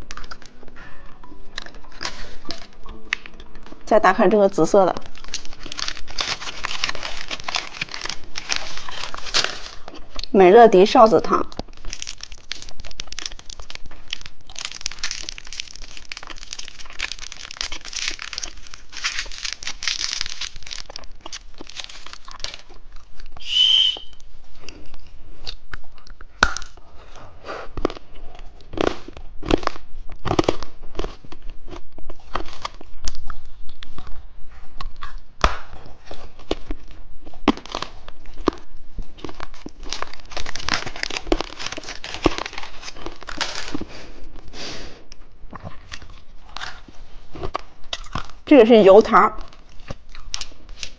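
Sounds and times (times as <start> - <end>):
plastic wrappers tearing and crinkling: 0.0 - 0.6, 1.6 - 26.8, 27.7 - 34.2, 34.8 - 50.9.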